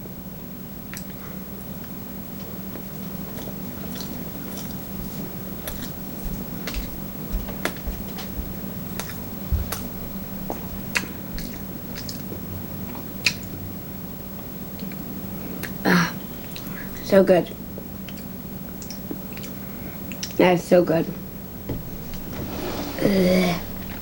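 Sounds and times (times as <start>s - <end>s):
person chewing: 2.4s - 13.6s, 18.0s - 20.4s
low hum: 21.1s - 24.0s.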